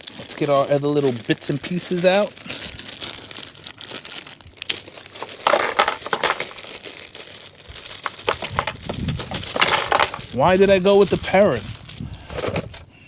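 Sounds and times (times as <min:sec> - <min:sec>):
plastic packaging crinkling: 0:00.0 - 0:12.9
small metal parts clinking: 0:05.0 - 0:10.4.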